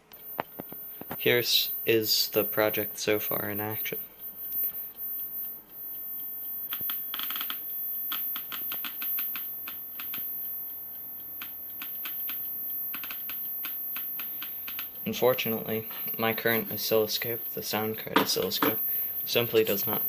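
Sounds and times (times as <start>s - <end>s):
geiger counter clicking: 6.7s - 10.3s, 11.3s - 15.1s, 16.1s - 20.0s.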